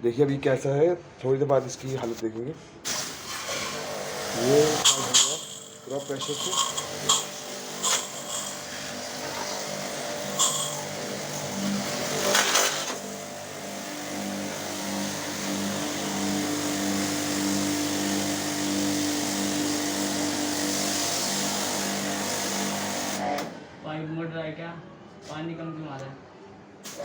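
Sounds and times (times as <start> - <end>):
water jet hissing: 2.8 - 23.2
pressure washer pump humming: 2.8 - 23.5.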